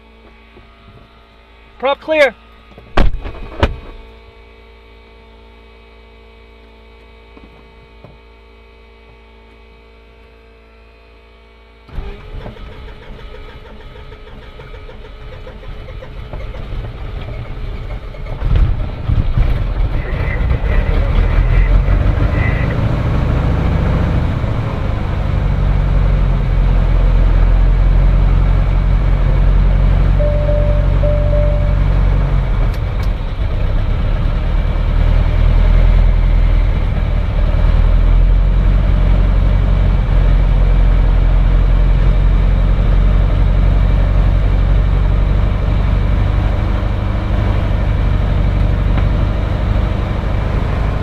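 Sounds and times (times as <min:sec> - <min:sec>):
aircraft engine starting and idling: 0:11.9 - 0:51.0
electrical hum: 0:24.2 - 0:33.6
high beeps: 0:30.2 - 0:32.2.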